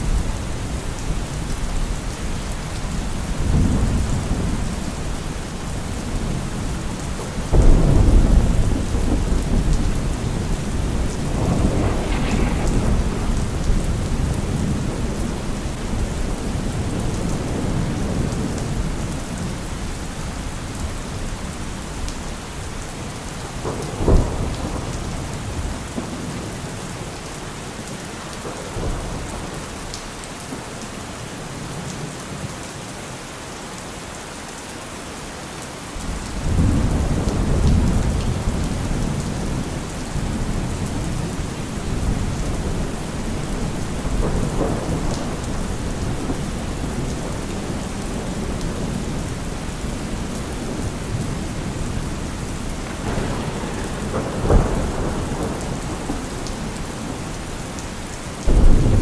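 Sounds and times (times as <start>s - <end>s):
deep rumble of thunder: 0.0s - 27.2s, 36.1s - 59.0s
heavy rain: 0.0s - 59.0s
sharp thunderclap: 7.4s - 19.1s, 36.4s - 57.8s, 58.4s - 59.0s.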